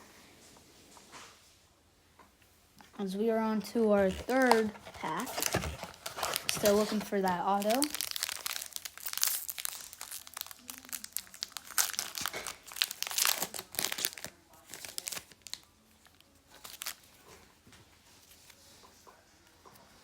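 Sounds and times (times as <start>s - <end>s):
card pack wrapper crinkling: 3.7s - 17.2s.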